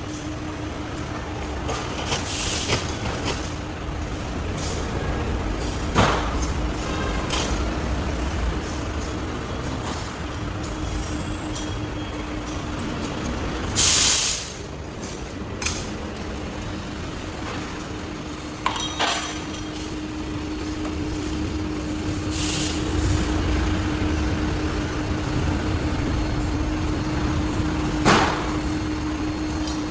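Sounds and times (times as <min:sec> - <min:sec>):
workshop machinery humming: 0:00.0 - 0:29.9
short air hisses: 0:13.8 - 0:14.6, 0:22.3 - 0:22.8.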